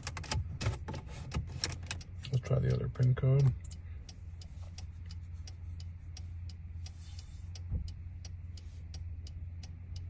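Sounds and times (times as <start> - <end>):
low hum inside car: 0.0 - 10.0
hazard-light flasher ticking: 2.0 - 10.0.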